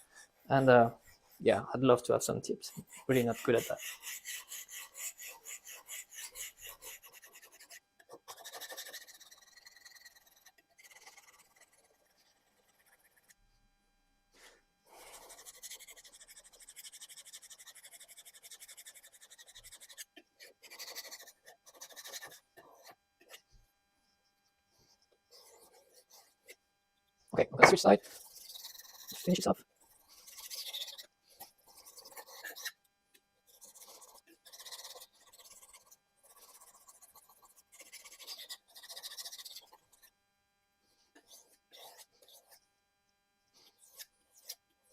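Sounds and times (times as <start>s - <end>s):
knife scraping on whetstone: 2.8s - 7.2s.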